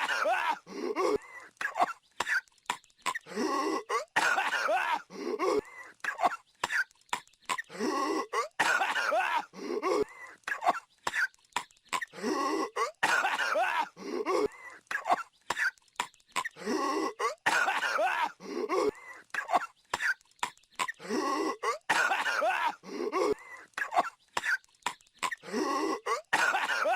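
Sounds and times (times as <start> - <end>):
cartoon voice coughing: 25.2 - 26.9.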